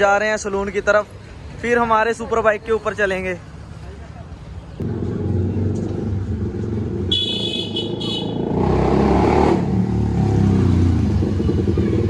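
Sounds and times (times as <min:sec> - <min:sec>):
motorcycle engine revving: 0:04.8 - 0:12.0.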